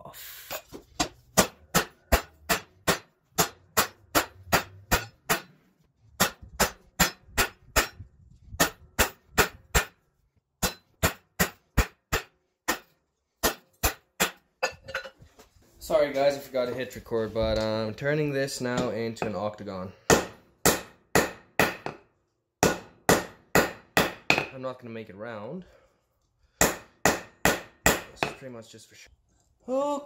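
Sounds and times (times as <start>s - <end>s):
hammer striking steel on anvil: 1.4s - 5.6s, 6.2s - 8.0s, 8.6s - 10.0s, 10.6s - 14.8s, 20.1s - 22.0s, 22.6s - 24.6s, 26.6s - 28.5s.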